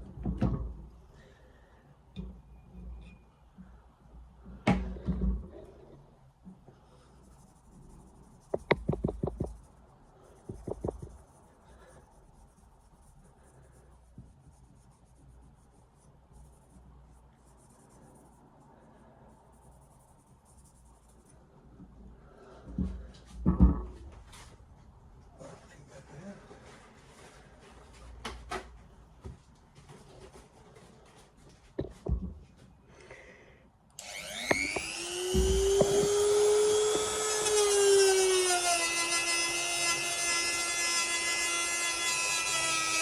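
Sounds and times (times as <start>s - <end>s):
scrubbing rust off axe head: 8.3s - 11.9s
knock: 8.5s - 9.6s, 10.5s - 11.2s, 22.8s - 24.0s.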